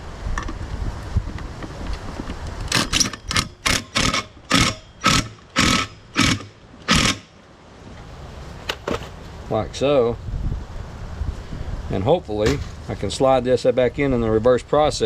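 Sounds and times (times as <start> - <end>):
impact wrench bursts: 2.7 - 7.4.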